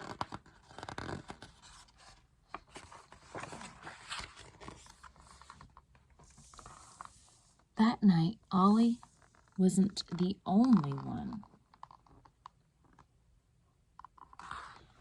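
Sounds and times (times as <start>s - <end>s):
book pages rustling: 0.0s - 7.7s, 8.9s - 9.6s, 14.0s - 15.0s.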